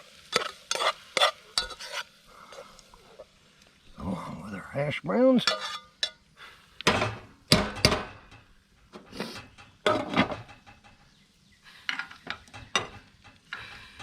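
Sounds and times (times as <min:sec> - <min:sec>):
metal utensil clanking on pan: 0:00.3 - 0:02.1, 0:05.4 - 0:06.2, 0:06.8 - 0:11.1, 0:11.9 - 0:14.0.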